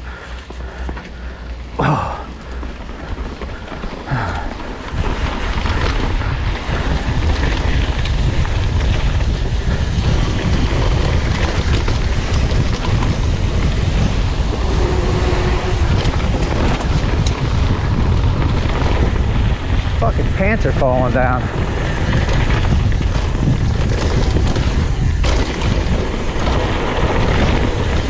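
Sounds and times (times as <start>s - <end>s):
wind rushing over microphone: 0.0s - 28.0s
bike clicks and knocks: 2.3s - 15.0s, 21.5s - 28.0s.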